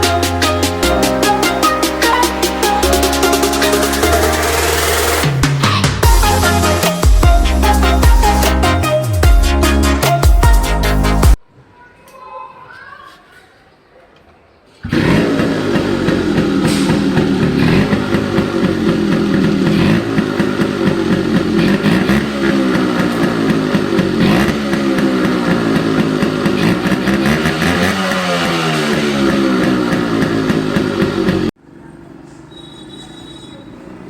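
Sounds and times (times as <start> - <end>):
two-stroke engine revving: 0.0 - 10.2, 14.8 - 31.6.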